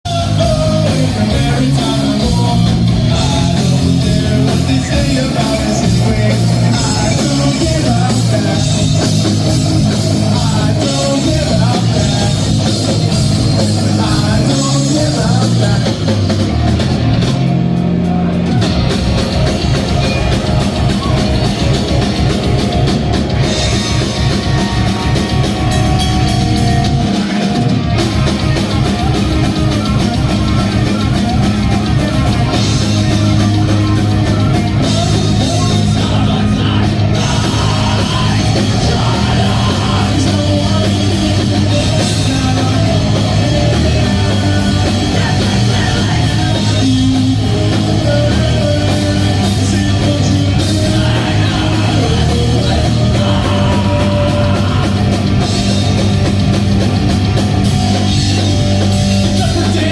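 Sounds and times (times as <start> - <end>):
person singing: 0.0 - 16.4, 28.4 - 56.0, 58.7 - 59.9
drum kit: 0.0 - 59.9
electric guitars: 0.1 - 59.9.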